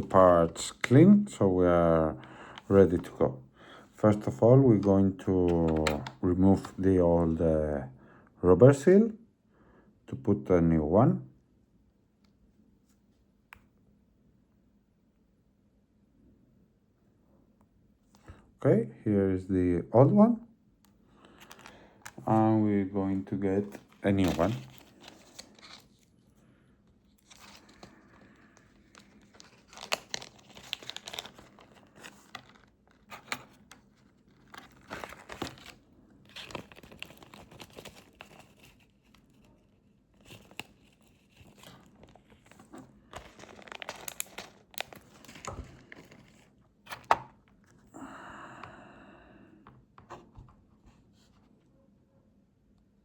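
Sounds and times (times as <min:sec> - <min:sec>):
plastic packet crinkling: 0:21.2 - 0:26.1, 0:27.1 - 0:47.1.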